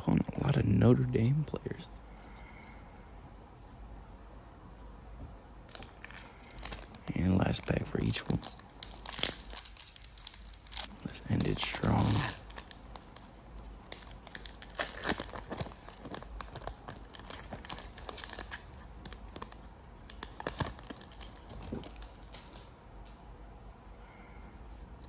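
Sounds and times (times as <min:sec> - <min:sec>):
wrapper tearing and crinkling: 0:05.7 - 0:22.7.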